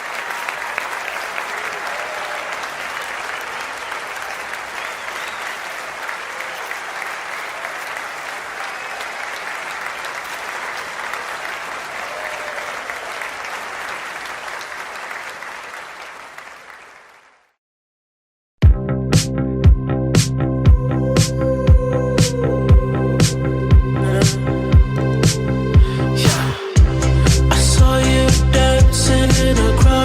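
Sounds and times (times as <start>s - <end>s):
audience applauding: 0.0s - 17.6s
pop track with heavy beat: 18.6s - 30.0s.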